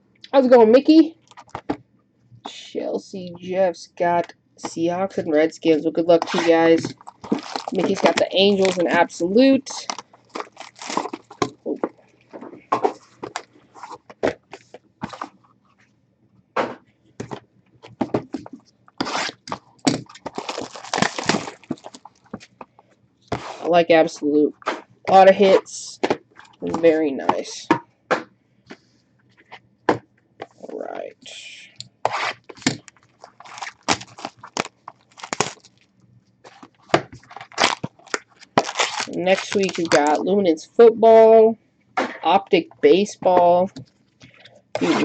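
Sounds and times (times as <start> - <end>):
card packaging crinkling: 6.2 - 11.7, 17.2 - 22.6, 32.1 - 35.9, 36.5 - 40.2.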